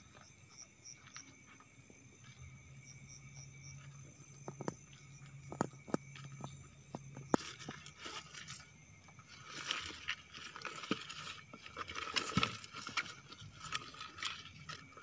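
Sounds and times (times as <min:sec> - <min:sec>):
crickets chirring: 0:00.0 - 0:15.0
rustling: 0:07.4 - 0:15.0.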